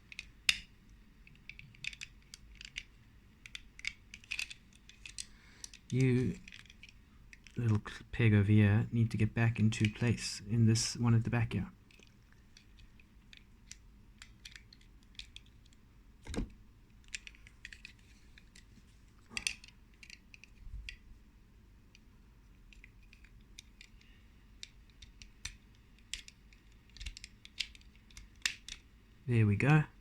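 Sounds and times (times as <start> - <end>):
small plastic clicks and taps: 0.1 - 7.6, 11.9 - 18.7, 22.7 - 28.9.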